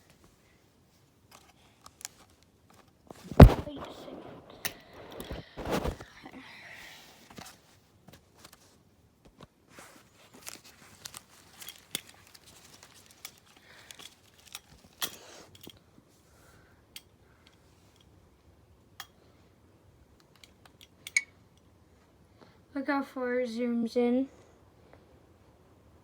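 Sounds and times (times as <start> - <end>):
rustling of small objects: 1.2 - 6.0, 9.7 - 15.8.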